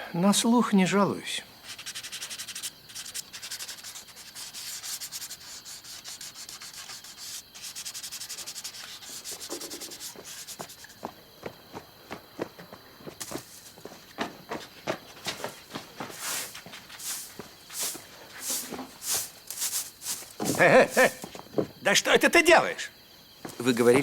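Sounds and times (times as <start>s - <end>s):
rough rubbing strokes: 1.7s - 11.0s, 16.2s - 21.3s.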